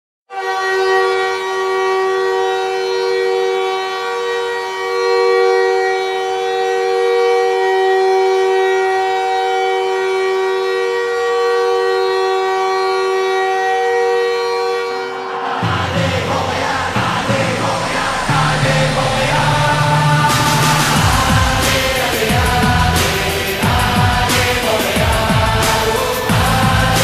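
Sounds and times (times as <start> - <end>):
goal horn blast: 0.3 - 7.3, 12.7 - 27.0.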